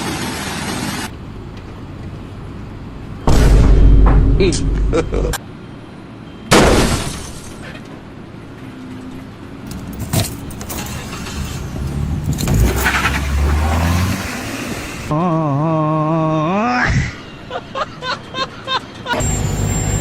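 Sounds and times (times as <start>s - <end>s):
vehicle engine running: 1.1s - 5.4s, 9.7s - 15.1s
loud crash: 3.2s - 5.4s
rattling and clinking: 9.7s - 13.8s.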